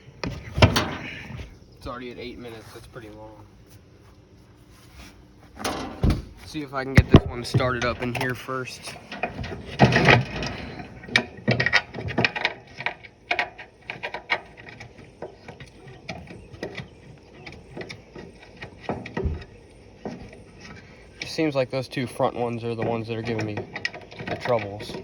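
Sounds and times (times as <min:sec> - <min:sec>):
metal bolts clicking and knocking: 0:00.2 - 0:01.1, 0:05.6 - 0:25.0
metal clatter: 0:05.6 - 0:21.4, 0:22.1 - 0:25.0.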